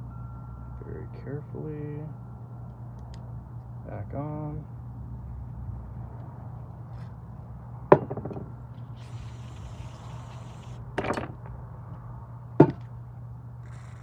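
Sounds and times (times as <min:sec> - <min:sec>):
steady low hum: 0:00.0 - 0:14.0
aerosol can spraying: 0:09.0 - 0:10.8.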